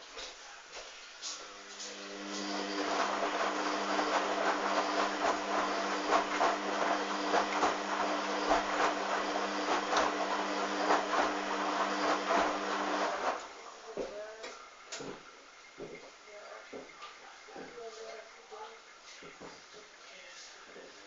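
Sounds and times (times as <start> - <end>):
washing machine humming and rattling: 1.2 - 16.0.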